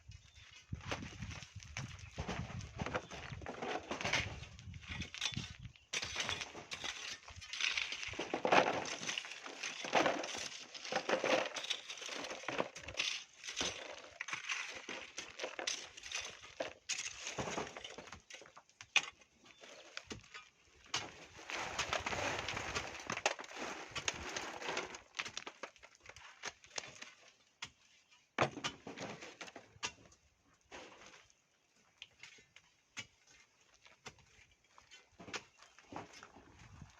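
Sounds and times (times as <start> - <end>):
hand tools digging into gravel: 2.2 - 18.3, 18.9 - 27.8.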